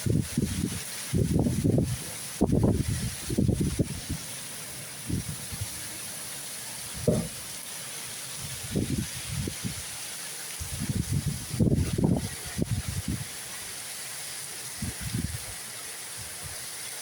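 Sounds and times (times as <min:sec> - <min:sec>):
heavy rain hissing: 0:00.0 - 0:17.0
low bumps: 0:07.0 - 0:07.4.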